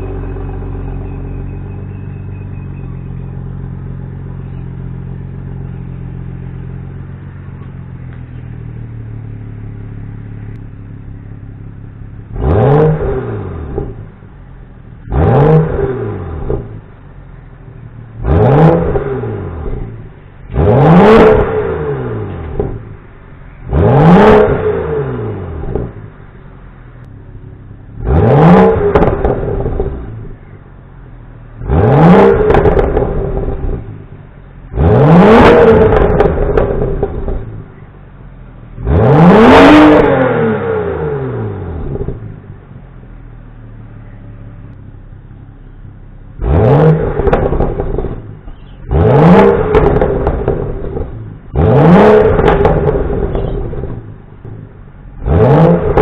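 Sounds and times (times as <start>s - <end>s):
car engine idling: 0.0s - 56.0s
engine revving: 9.1s - 14.3s, 15.0s - 26.2s, 27.8s - 30.5s, 31.5s - 37.8s, 38.6s - 42.6s, 46.2s - 56.0s.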